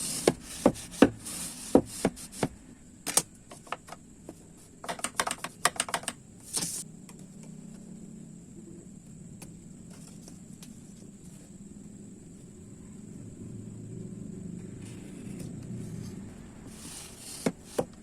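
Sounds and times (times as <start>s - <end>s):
faint steady hum: 0.0s - 18.0s
hand tools tapping on wood: 3.5s - 6.2s
short hiss: 6.5s - 6.8s.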